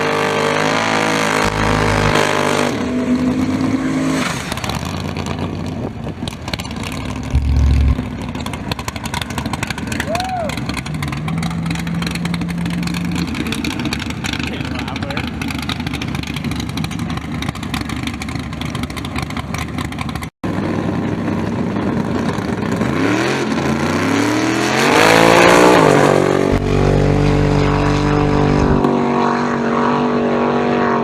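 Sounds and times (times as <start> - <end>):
engine revving up: 0.0 - 4.5, 7.3 - 8.2, 23.0 - 31.0
rough crackling race car engine: 0.0 - 31.0.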